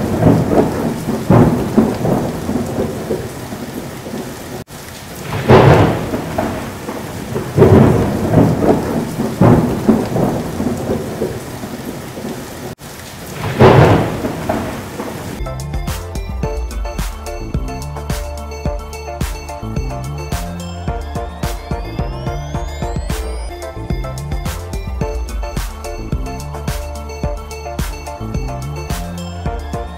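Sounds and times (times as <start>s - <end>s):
rain: 0.0s - 29.9s.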